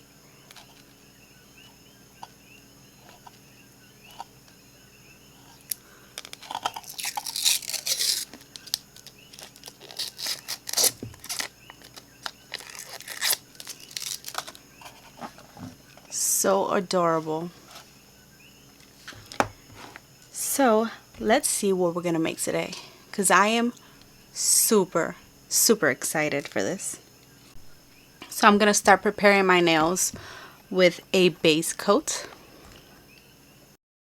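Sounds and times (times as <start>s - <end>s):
plastic packaging crinkling and tearing: 6.2s - 15.0s.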